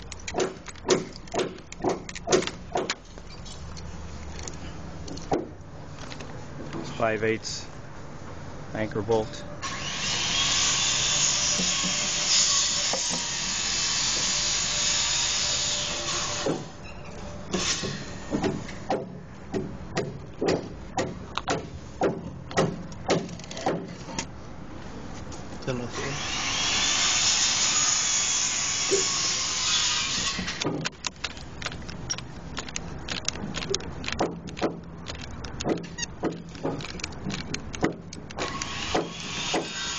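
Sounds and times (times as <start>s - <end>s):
tool whirring: 26.0s - 39.9s
electric drill boring: 38.4s - 39.9s.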